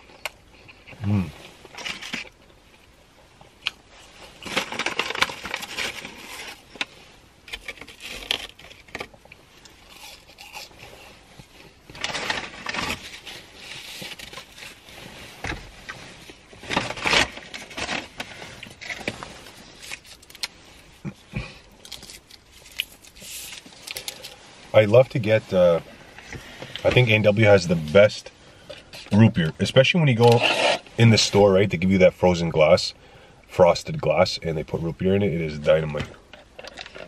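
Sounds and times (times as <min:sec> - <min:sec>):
chewing and crunching food: 0:07.6 - 0:13.3.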